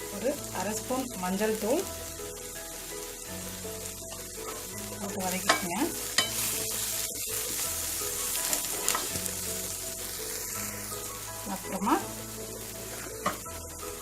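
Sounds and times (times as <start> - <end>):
food sizzling in hot oil: 0.0 - 14.0
spoon scraping a pan: 4.1 - 11.0, 12.8 - 13.4.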